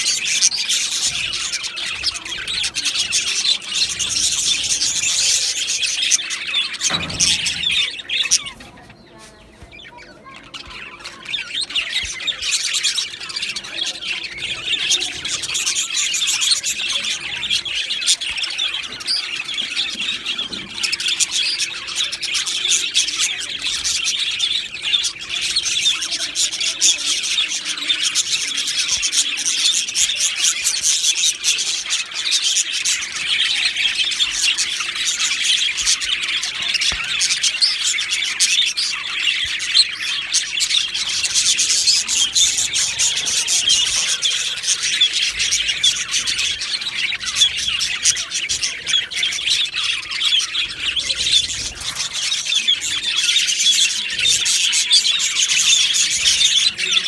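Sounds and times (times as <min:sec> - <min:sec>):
budgerigars chattering and chirping: 0:00.0 - 0:57.0.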